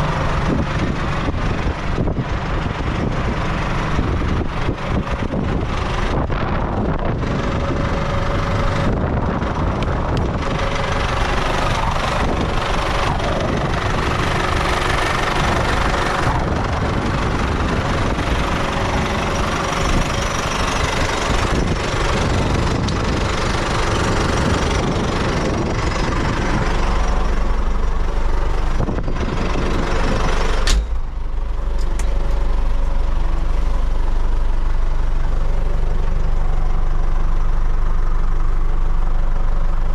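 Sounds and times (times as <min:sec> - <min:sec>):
road and wind noise: 0:00.0 - 0:39.9
tractor diesel engine running: 0:00.0 - 0:39.9
sharp click: 0:30.6 - 0:31.0.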